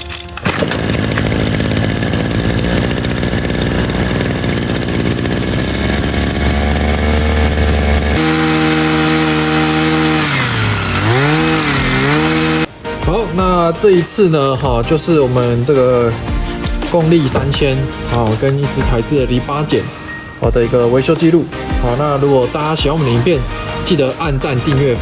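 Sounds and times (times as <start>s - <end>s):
two-stroke engine revving: 0.4s - 12.7s.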